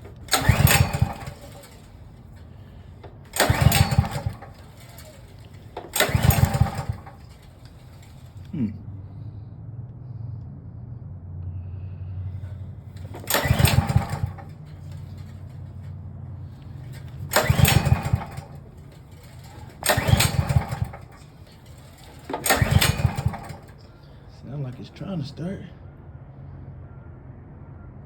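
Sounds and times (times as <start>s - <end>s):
engine turning over: 0.0s - 8.6s, 12.4s - 25.1s
generator recoil starter pulls: 0.0s - 8.6s, 12.4s - 25.3s
engine spinning down whine: 0.0s - 15.9s, 16.5s - 25.4s.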